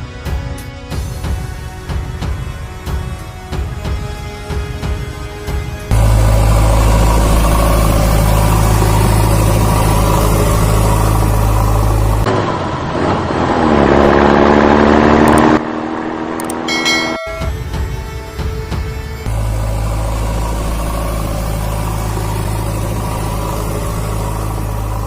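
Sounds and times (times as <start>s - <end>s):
engine revving: 5.8s - 25.0s
heavy vehicle engine idling: 5.9s - 12.3s, 17.4s - 25.0s.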